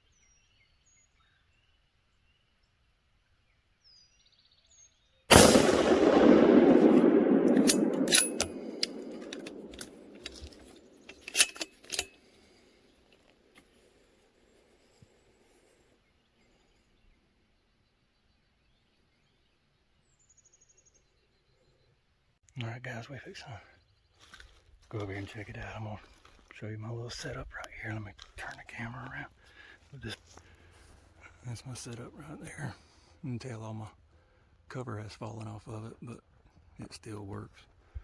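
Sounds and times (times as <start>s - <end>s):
gunshot echoing: 5.3s - 10.8s
sharp clicks: 5.3s - 12.1s.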